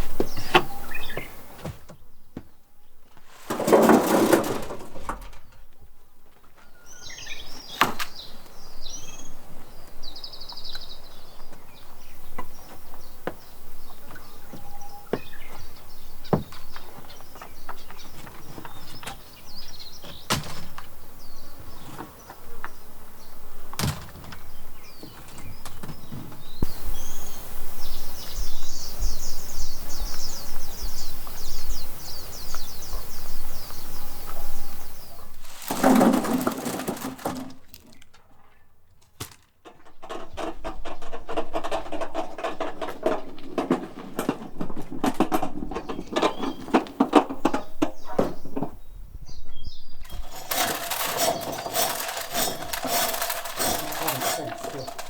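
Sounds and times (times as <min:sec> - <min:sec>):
high chirping calls: 0:26.5 - 0:35.4
sharp knocks and clatter: 0:35.5 - 0:37.5, 0:50.1 - 0:55.0.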